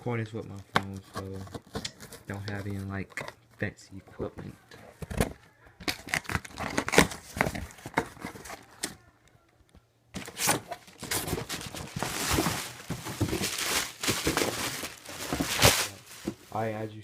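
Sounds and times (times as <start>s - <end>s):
packaging rustling: 4.9s - 9.0s, 10.2s - 16.7s.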